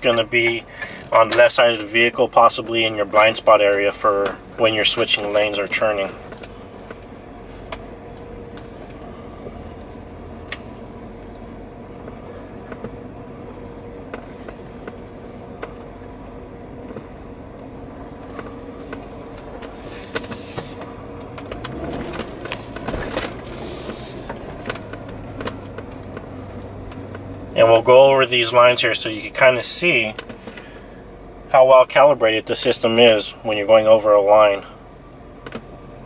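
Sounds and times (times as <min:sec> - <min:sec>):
car cabin road rumble: 0:00.0 - 0:36.0
faint steady hum: 0:00.0 - 0:36.0
short hiss: 0:19.7 - 0:20.8, 0:23.5 - 0:24.4.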